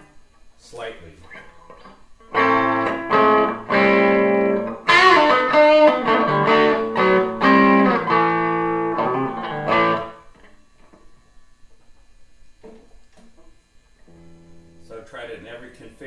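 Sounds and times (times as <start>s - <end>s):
electric guitar strummed chords: 1.7s - 10.5s.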